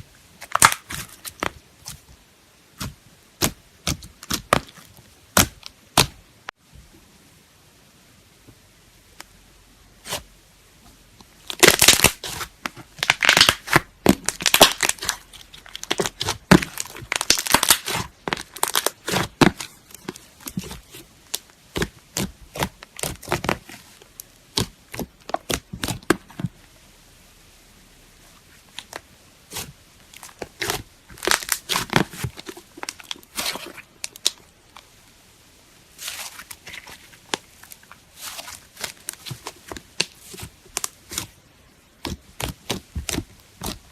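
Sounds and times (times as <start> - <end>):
slime crackling and popping: 0.4 - 2.0, 2.8 - 6.2, 11.5 - 26.5, 28.7 - 34.8, 36.0 - 41.4, 42.0 - 43.9.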